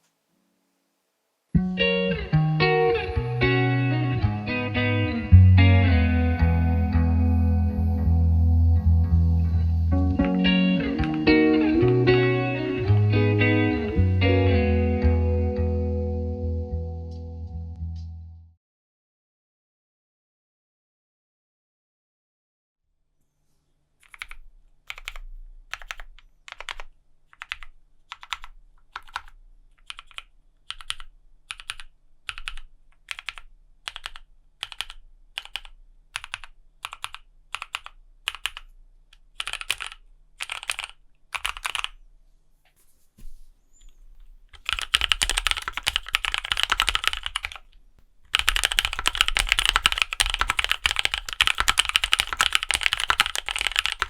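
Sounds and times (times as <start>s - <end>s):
mechanical keyboard typing: 10.2s - 12.1s, 24.0s - 42.0s, 44.6s - 54.0s.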